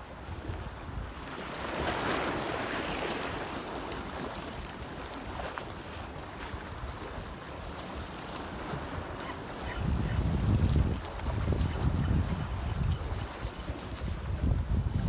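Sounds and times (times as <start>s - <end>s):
wind buffeting microphone: 9.5s - 15.0s.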